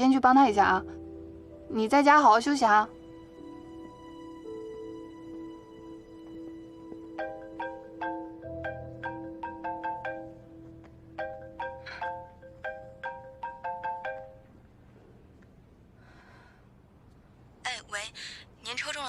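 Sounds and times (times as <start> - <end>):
marimba phone ringtone: 6.4 - 14.6.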